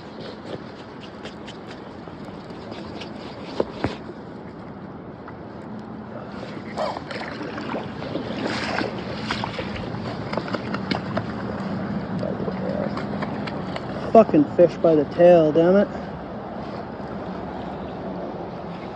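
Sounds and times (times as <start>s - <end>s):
river water rushing: 5.9s - 12.1s.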